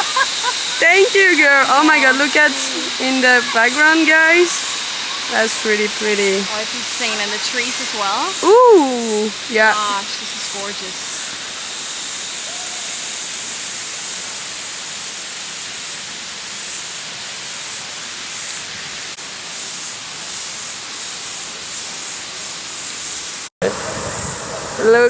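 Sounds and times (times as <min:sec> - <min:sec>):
waterfall rushing: 0:00.0 - 0:13.8
high shrill sound: 0:01.1 - 0:07.3.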